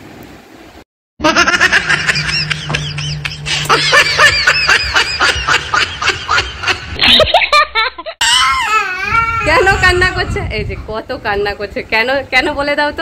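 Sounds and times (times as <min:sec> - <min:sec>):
small child crying out: 0:08.2 - 0:10.1.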